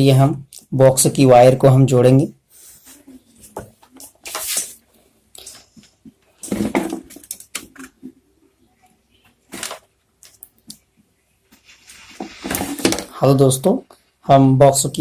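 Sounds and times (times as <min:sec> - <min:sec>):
cables rustling and clattering: 0:11.5 - 0:13.2.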